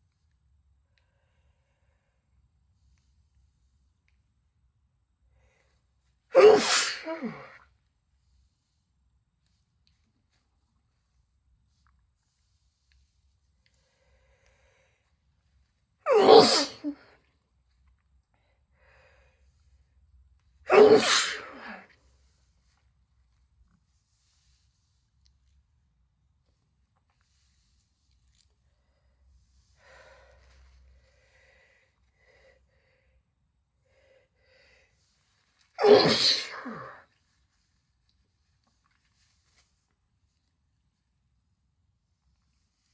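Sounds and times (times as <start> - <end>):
woman sneezing: 6.3 - 7.6, 16.1 - 17.2, 20.7 - 21.9, 35.8 - 37.1.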